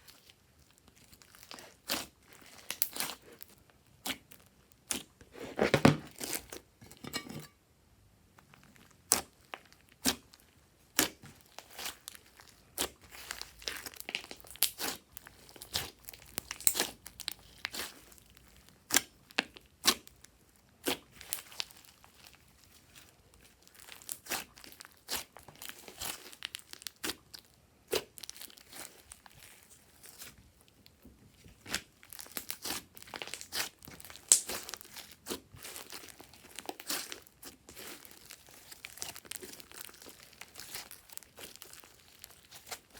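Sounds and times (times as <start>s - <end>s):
slime sticky pops and crackles: 12.8s - 15.0s, 31.7s - 42.9s.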